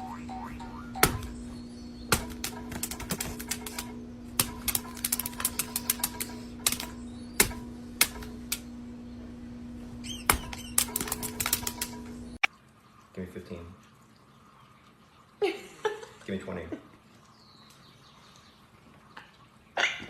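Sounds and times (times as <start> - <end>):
steady low hum: 0.0 - 13.0
sharp taps and clicks: 2.1 - 8.7.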